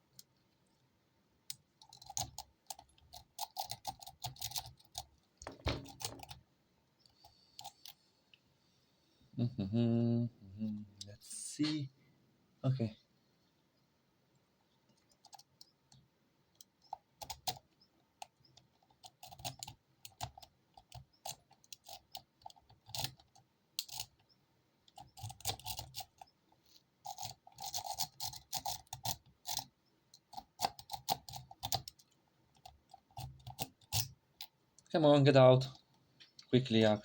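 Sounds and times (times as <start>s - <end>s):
pick scraping in lock: 1.8s - 6.4s, 18.2s - 24.2s, 27.0s - 34.2s.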